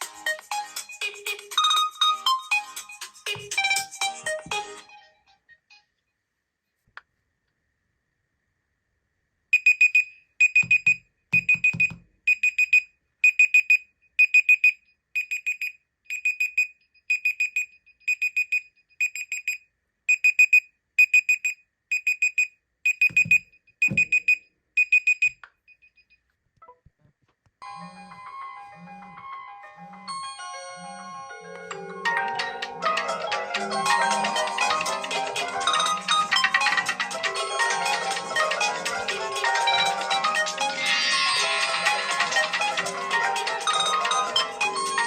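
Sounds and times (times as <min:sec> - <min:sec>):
smartphone alarm beeping: 0:09.5 - 0:26.0.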